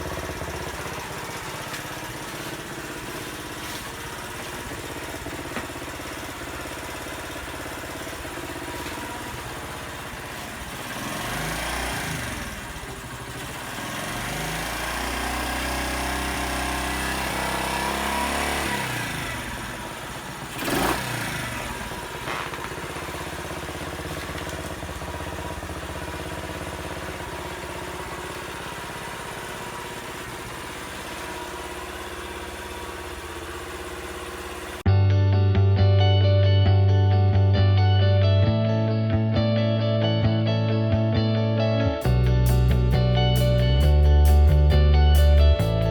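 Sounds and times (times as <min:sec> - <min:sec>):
small motorcycle engine revving and idling: 0:00.0 - 0:34.9, 0:42.0 - 0:45.9.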